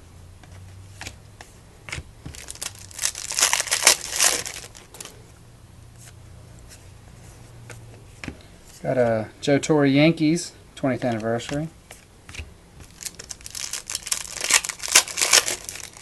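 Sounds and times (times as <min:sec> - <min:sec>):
plastic wrapper crinkling and tearing: 0:02.3 - 0:05.2, 0:12.8 - 0:16.0.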